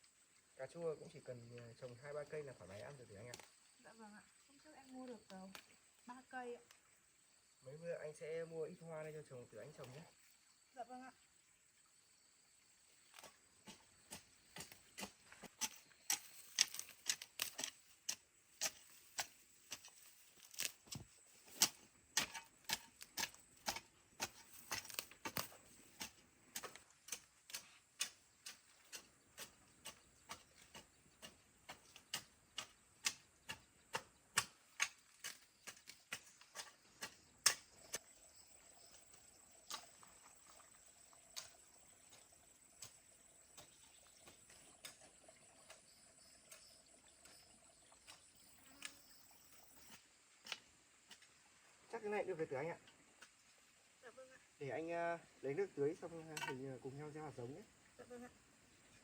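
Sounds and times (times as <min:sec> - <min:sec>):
hand hoe striking soil: 0:13.1 - 0:38.2, 0:39.6 - 0:40.1, 0:41.3 - 0:45.9, 0:49.8 - 0:51.4.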